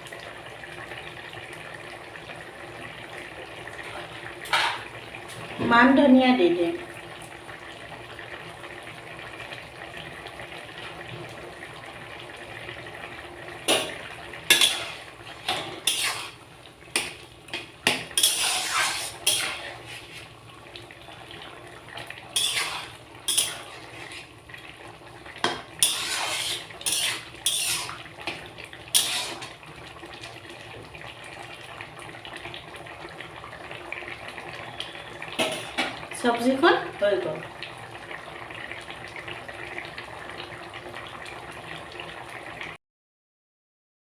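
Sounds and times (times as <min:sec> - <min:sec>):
spoon scraping a pot: 0:13.7 - 0:16.4, 0:17.9 - 0:20.3, 0:22.4 - 0:24.3, 0:25.4 - 0:29.6, 0:35.4 - 0:35.9.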